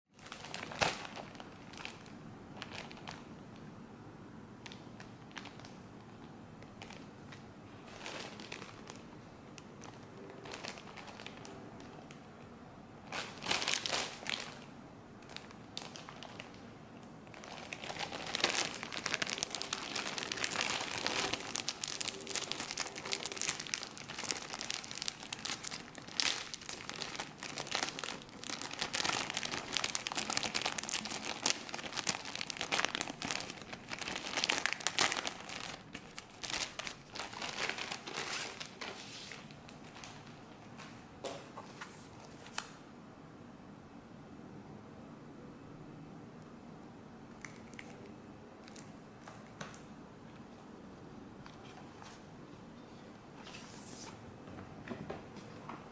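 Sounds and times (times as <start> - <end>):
plastic packaging crinkling: 0.2 - 3.4, 4.6 - 12.2, 13.0 - 40.4.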